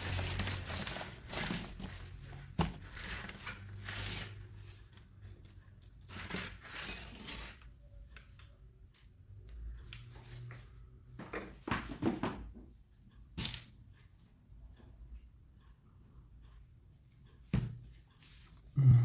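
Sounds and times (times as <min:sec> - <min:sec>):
hands rustling and scraping objects: 0:00.0 - 0:04.5.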